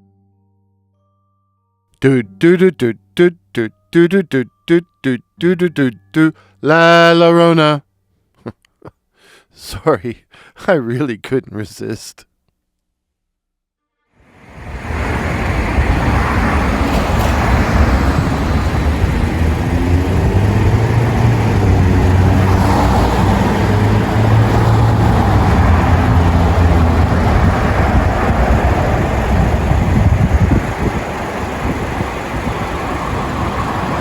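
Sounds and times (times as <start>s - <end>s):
road and wind noise: 14.3s - 34.0s
low engine hum: 14.4s - 34.0s.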